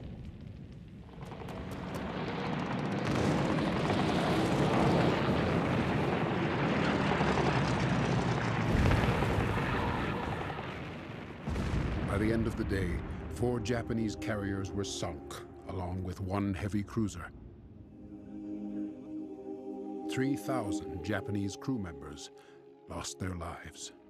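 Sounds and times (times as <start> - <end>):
deep boom: 0.0 - 6.7, 8.7 - 15.6
aircraft engine roar: 1.0 - 11.4.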